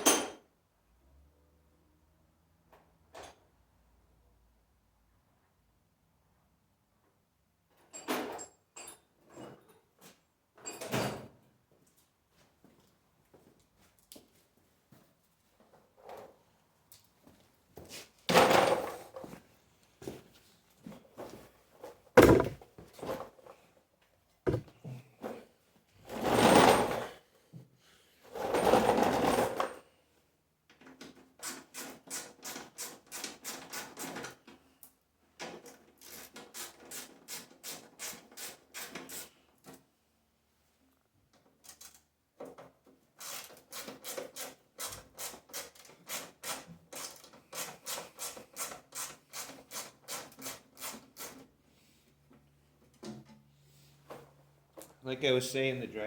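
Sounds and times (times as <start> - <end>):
sharp knocks: 22.2 - 22.6, 24.5 - 24.7
scraping rustles: 22.2 - 23.2.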